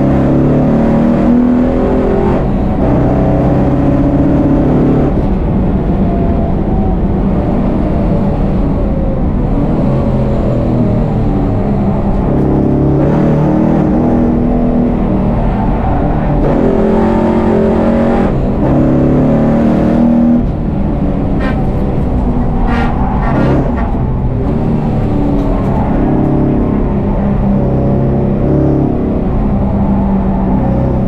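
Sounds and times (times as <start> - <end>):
race car engine at full throttle: 0.0 - 31.0.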